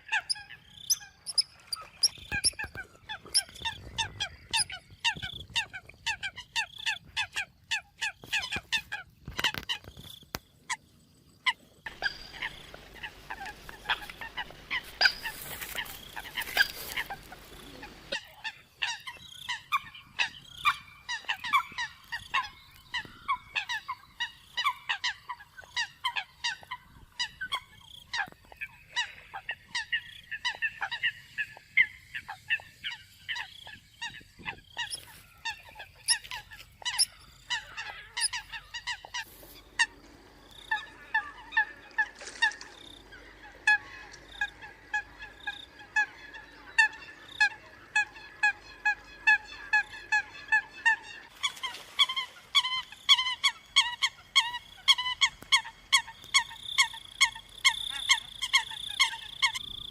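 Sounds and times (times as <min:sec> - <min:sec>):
coots honking calls: 0:11.9 - 0:59.7.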